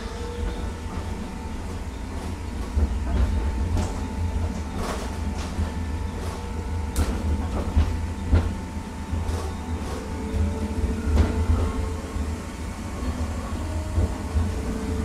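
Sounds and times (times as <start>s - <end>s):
tram interior rumble: 0.0s - 15.0s.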